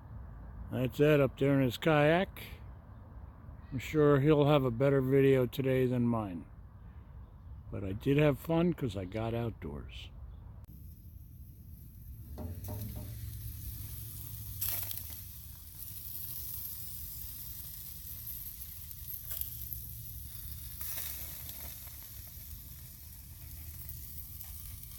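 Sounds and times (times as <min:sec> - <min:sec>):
kebabs sizzling on a grill: 0:10.7 - 0:24.9.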